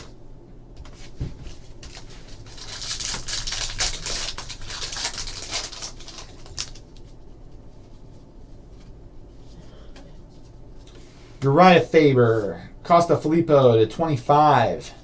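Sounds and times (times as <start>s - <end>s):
cards rustling and clicking: 1.8s - 7.0s
wrapper tearing and crinkling: 1.8s - 7.0s.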